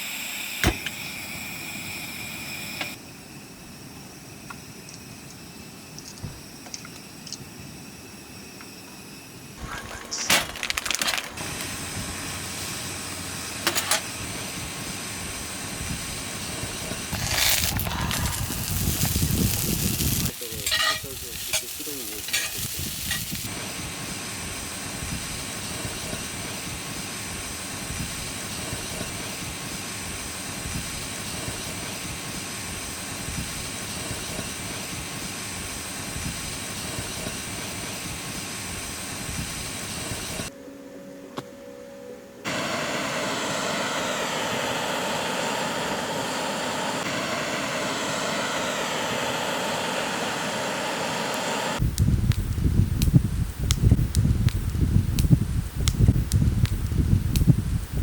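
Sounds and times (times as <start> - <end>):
food sizzling in a pan: 17.1 - 25.0.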